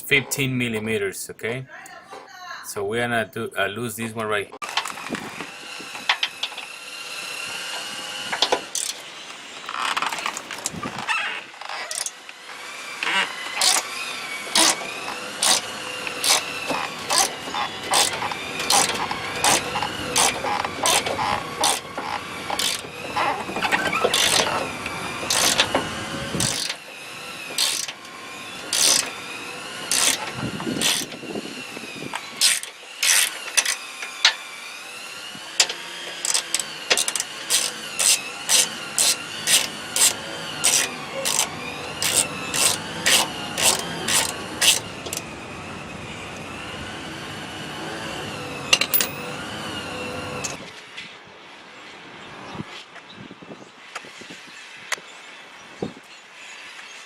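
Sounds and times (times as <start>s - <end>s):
ratchet wrench clicking: 15.4s - 21.8s, 22.5s - 22.8s, 25.3s - 25.7s, 26.4s - 26.8s, 27.6s - 28.0s, 28.7s - 29.1s, 35.6s - 44.8s.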